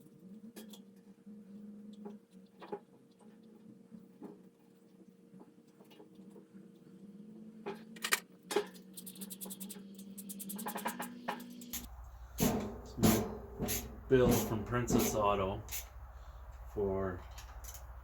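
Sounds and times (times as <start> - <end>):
clicks and taps from hand work: 10.7 - 15.8
steady low hum: 11.7 - 18.0.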